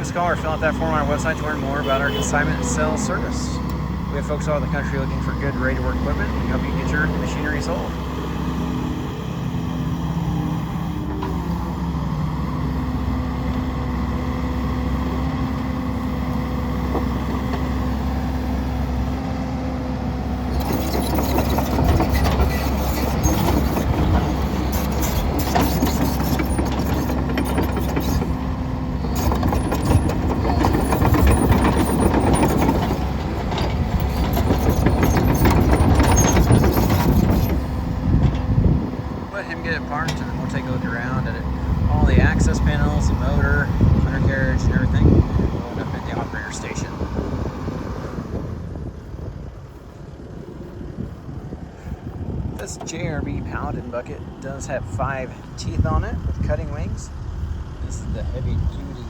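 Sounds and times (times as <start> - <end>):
excavator diesel engine humming: 0.0 - 59.0
machine rattling and clanking: 20.4 - 45.0.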